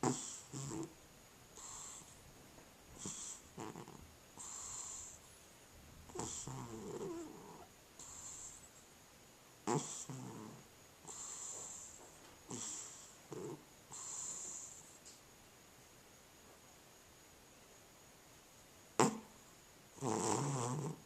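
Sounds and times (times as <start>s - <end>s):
cat snoring: 0.0s - 1.0s, 1.6s - 2.2s, 3.0s - 5.2s, 6.1s - 8.7s, 9.6s - 15.0s, 19.0s - 19.3s, 20.0s - 21.0s.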